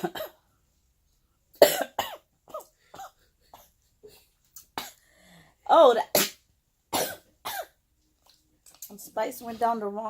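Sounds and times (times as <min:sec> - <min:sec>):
woman coughing: 0:00.0 - 0:00.4, 0:01.6 - 0:03.8, 0:06.9 - 0:07.8.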